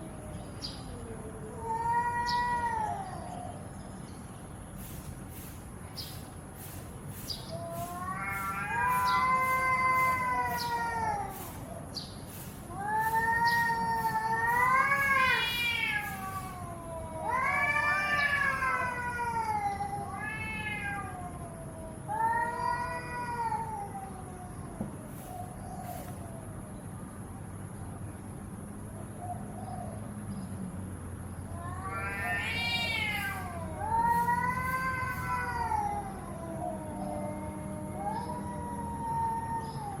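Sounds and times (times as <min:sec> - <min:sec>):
cats yowling: 0:00.0 - 0:03.7, 0:07.4 - 0:26.7, 0:31.4 - 0:40.0.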